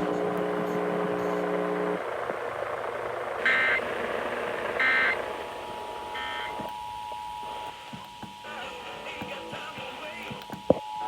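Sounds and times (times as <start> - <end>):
two-tone attention signal: 3.4 - 3.8, 4.8 - 5.2, 6.1 - 7.7.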